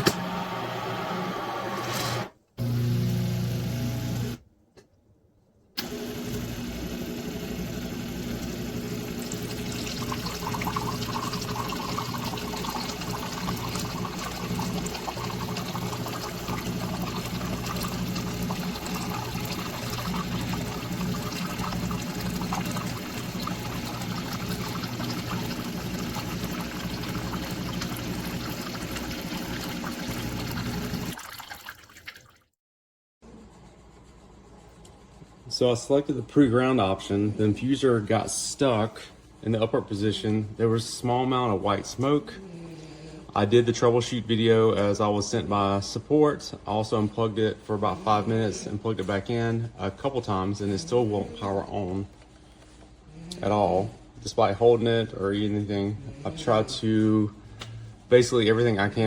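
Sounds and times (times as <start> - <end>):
coffee maker pump hum: 0.0 - 4.4, 5.8 - 31.2
water running and trickling: 7.9 - 32.4.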